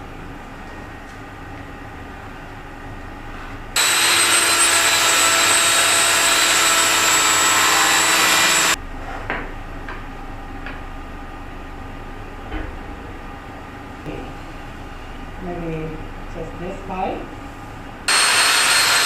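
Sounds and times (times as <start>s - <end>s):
power saw cutting plywood: 3.8s - 8.8s, 18.1s - 19.0s.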